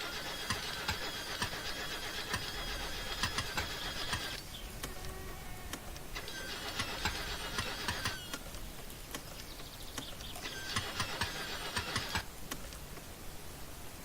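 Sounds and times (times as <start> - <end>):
car engine cranking: 0.0 - 4.5, 6.1 - 8.6, 10.0 - 12.3.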